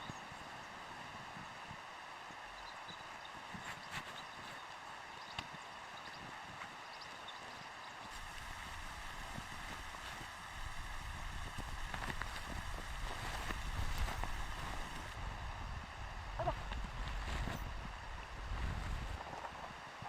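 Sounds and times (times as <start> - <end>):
steady hiss: 7.6 - 20.0
wind buffeting microphone: 8.2 - 19.3.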